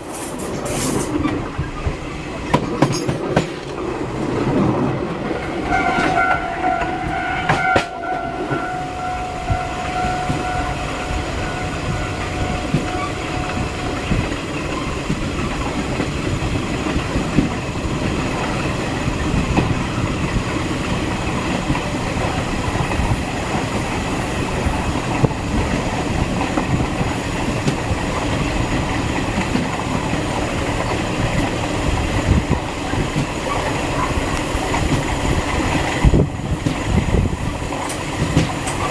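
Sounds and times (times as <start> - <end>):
train rumbling on rails: 0.0 - 38.9
long horn-like tone: 5.5 - 14.6.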